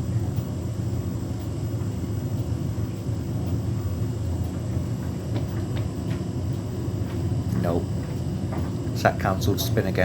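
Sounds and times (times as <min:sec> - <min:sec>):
washing machine drum rumbling: 0:03.4 - 0:10.0.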